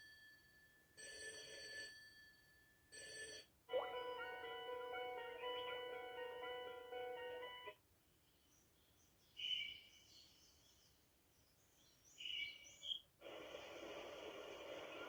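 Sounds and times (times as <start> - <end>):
alarm clock melody: 3.7 - 7.8
nature sounds recording: 8.2 - 15.0.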